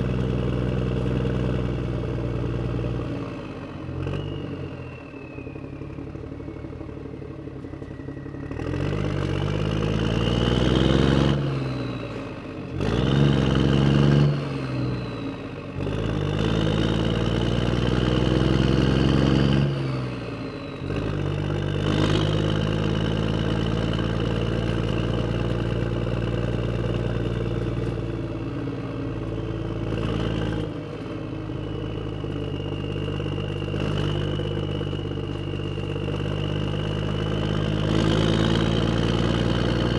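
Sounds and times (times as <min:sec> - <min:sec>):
motorcycle engine revving: 0:08.4 - 0:28.6, 0:31.6 - 0:39.9.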